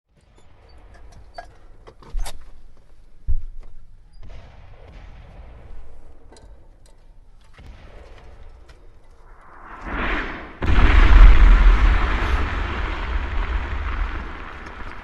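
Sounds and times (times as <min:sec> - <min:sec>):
low rumble: 0:09.2 - 0:15.0.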